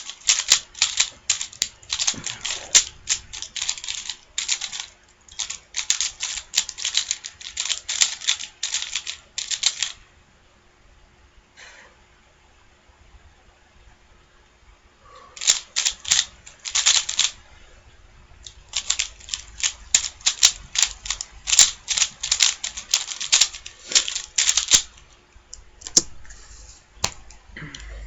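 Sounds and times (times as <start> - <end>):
puzzle cube clicking as turned: 0.0 - 10.0, 15.4 - 17.4, 18.4 - 25.0.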